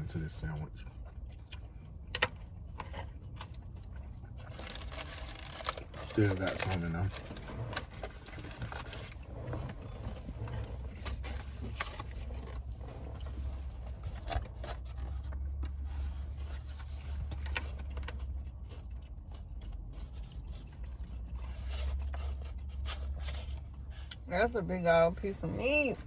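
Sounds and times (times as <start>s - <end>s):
paper wrapping rustling: 4.5s - 9.2s.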